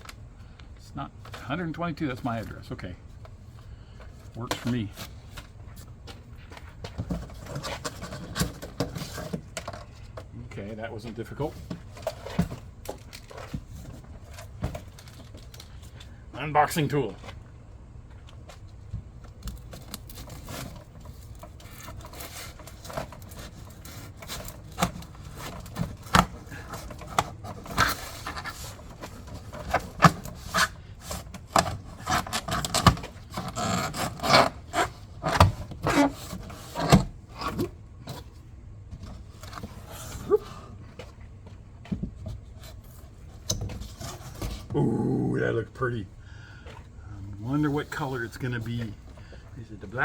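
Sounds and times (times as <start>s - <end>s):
cardboard box being cut open: 29.5s - 37.0s.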